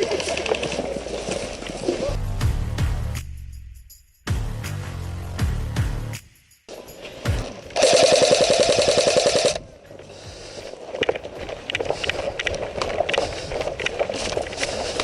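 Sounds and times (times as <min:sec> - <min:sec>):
rustling of movement: 0:06.7 - 0:15.0
airsoft rifle full-auto burst: 0:07.8 - 0:09.6
scattered clicks: 0:07.8 - 0:09.6.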